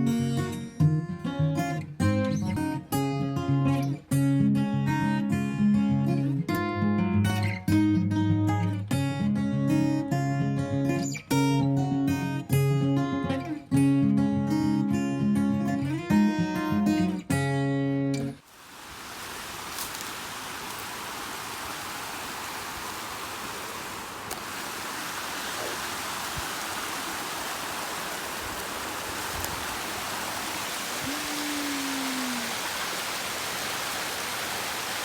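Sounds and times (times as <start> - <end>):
rushing water: 18.4 - 35.0.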